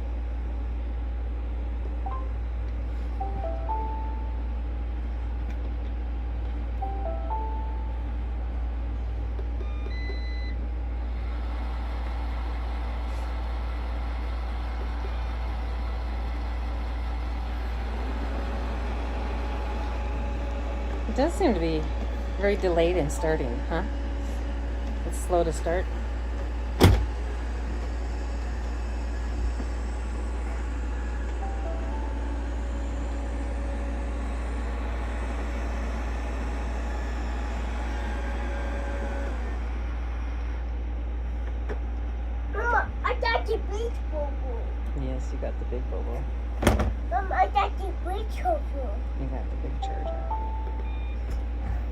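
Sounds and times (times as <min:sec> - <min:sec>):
robot vacuums droning: 0:17.5 - 0:40.6
short electronic beeps: 0:50.0 - 0:51.3.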